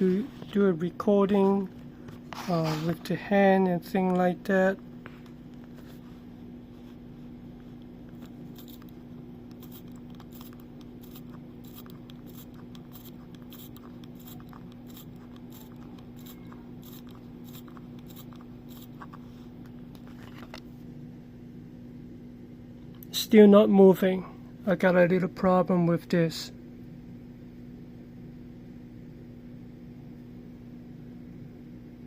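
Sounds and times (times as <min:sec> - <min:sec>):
steady low hum: 0:00.0 - 0:32.0
watch winding clicks: 0:08.6 - 0:19.2.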